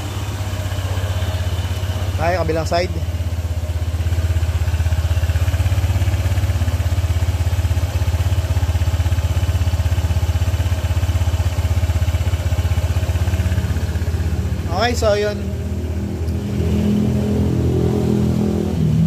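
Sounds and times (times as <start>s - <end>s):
scooter engine idling: 0.0s - 17.6s.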